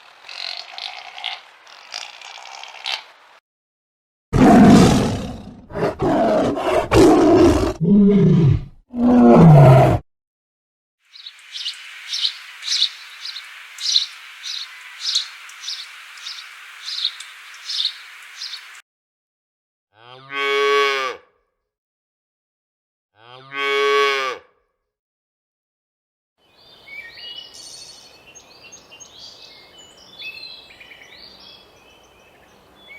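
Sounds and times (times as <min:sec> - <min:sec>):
big cat roaring: 0:04.4 - 0:10.0
steady hiss: 0:11.1 - 0:18.8.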